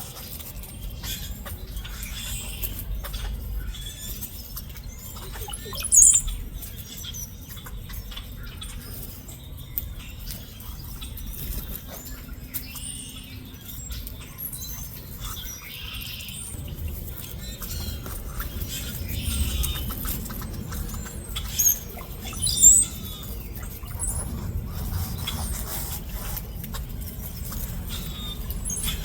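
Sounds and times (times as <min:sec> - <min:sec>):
small birds chirping: 0:00.0 - 0:29.0
low background rumble: 0:00.2 - 0:29.0
sharp high chirp: 0:05.2 - 0:06.4.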